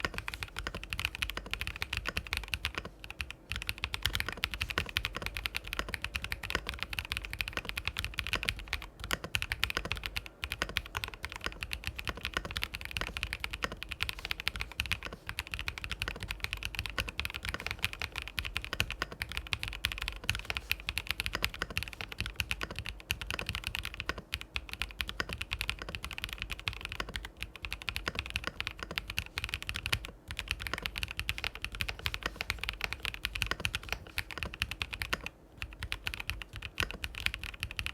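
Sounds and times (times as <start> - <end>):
clacky mechanical keyboard typing: 0.0 - 37.9.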